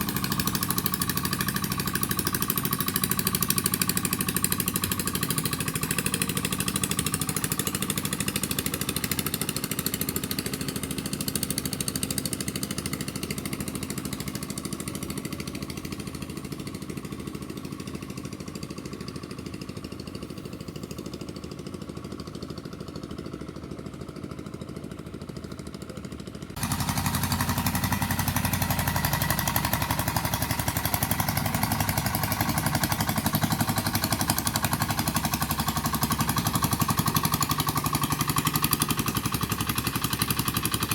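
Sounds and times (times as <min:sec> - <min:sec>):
boat engine running: 0:00.0 - 0:40.9.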